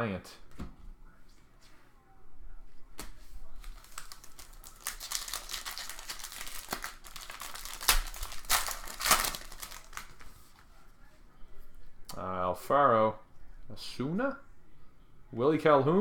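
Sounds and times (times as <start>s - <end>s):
card pack wrapper crinkling: 3.5s - 10.4s.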